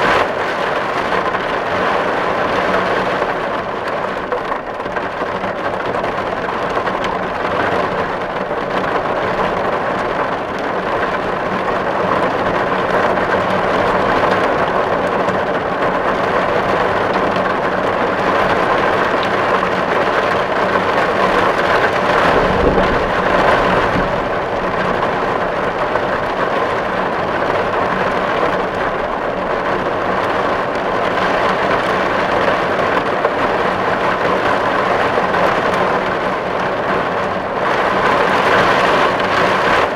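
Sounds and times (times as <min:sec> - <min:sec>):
rain on a tin roof: 0:00.0 - 0:39.9
low rumble: 0:21.2 - 0:27.6.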